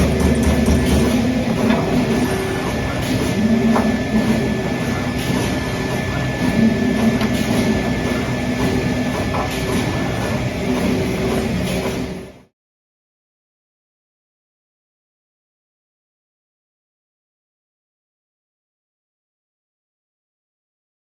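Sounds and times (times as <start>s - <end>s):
punch machine humming: 0.0s - 12.4s.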